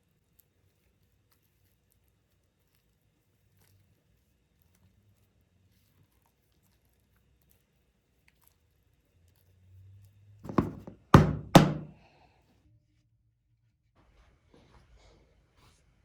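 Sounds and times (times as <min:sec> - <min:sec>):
knocks on kitchen surface: 0:10.5 - 0:11.9.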